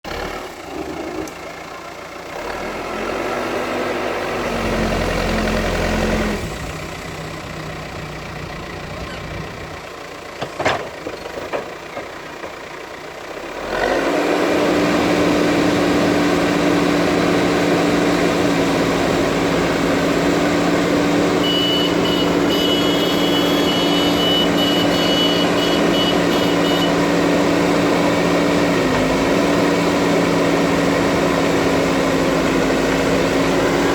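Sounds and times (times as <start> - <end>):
diesel engine running: 0.0 - 33.9
high beeping tone: 21.5 - 27.0.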